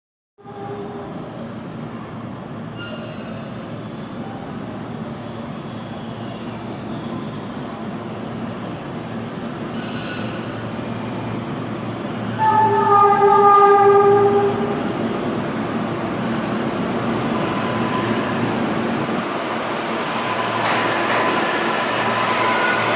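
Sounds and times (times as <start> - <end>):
train horn: 0.4 - 1.1, 12.4 - 14.8
subway train rail rumble: 0.4 - 22.9
wheel squeals: 9.6 - 10.6.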